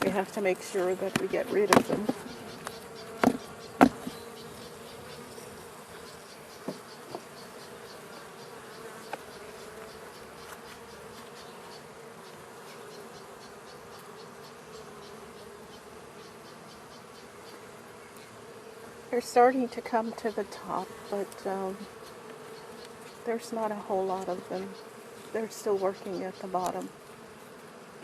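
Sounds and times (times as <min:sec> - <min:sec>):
bees buzzing: 0:00.0 - 0:28.0
sharp knocks: 0:03.2 - 0:04.2.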